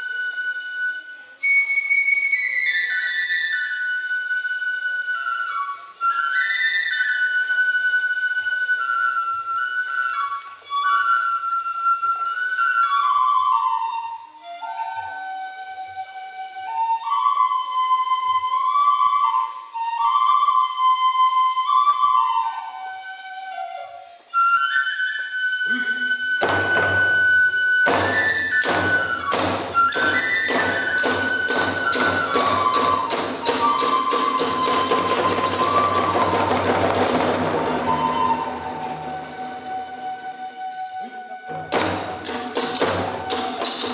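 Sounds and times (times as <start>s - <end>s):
bamboo flute melody: 0.0s - 43.9s
percussion strikes: 25.7s - 43.9s
drum roll: 26.4s - 40.5s, 41.6s - 43.9s.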